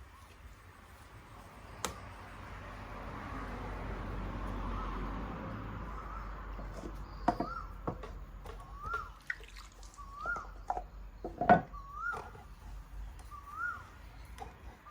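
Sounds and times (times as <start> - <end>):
rising and falling call: 8.6 - 10.7, 13.2 - 14.2.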